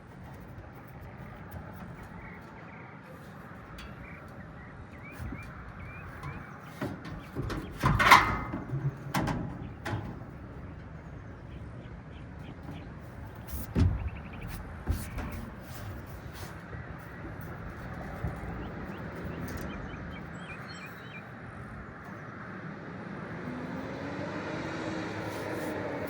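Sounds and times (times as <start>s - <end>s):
sheet metal clanks and knocks: 3.5s - 11.1s, 12.5s - 16.5s.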